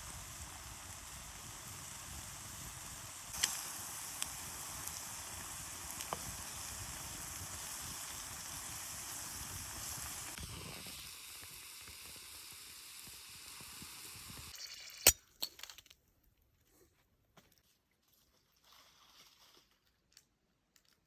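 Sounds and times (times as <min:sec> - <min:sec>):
omelette sizzling in a pan: 0:00.0 - 0:15.2.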